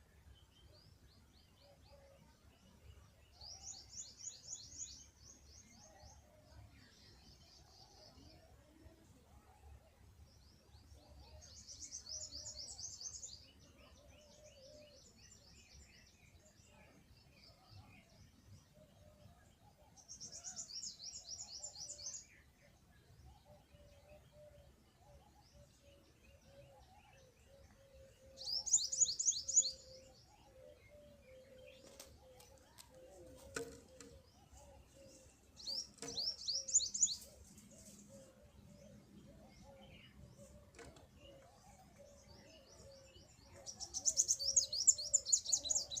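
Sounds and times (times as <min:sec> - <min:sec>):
songbird high-pitched trills: 0:28.3 - 0:30.2, 0:33.8 - 0:38.4, 0:42.7 - 0:46.0.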